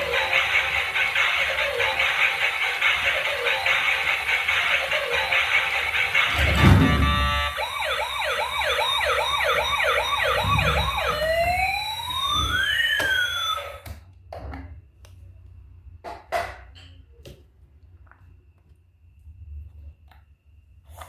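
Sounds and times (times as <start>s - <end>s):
toy electronic siren: 0.0s - 13.9s.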